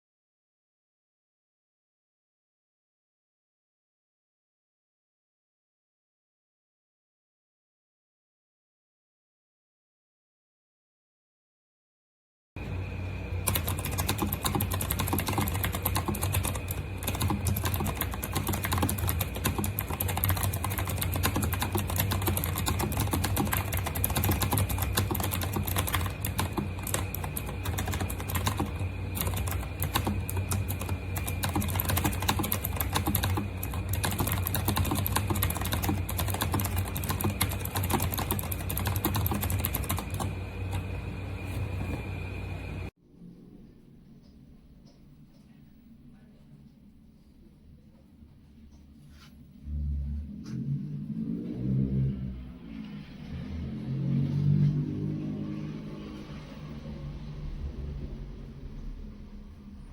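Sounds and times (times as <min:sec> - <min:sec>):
steady low hum: 0:12.6 - 0:59.9
fast typing on clicky keyboard: 0:13.4 - 0:40.9.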